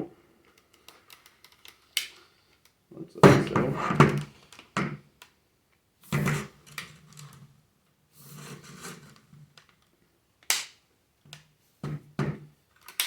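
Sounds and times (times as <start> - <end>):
plastic rubbing and scraping: 3.2 - 4.4.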